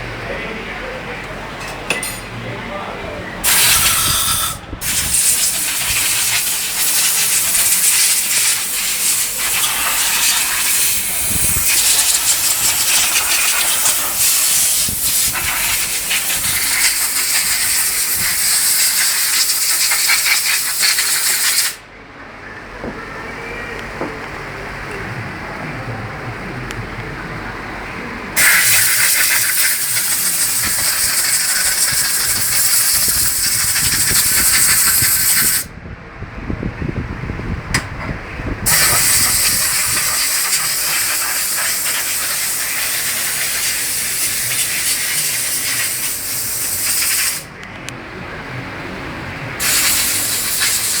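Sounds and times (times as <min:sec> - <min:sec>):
pressurised gas jet hissing: 0:03.4 - 0:21.8, 0:28.4 - 0:35.7, 0:38.6 - 0:47.5, 0:49.6 - 0:51.0.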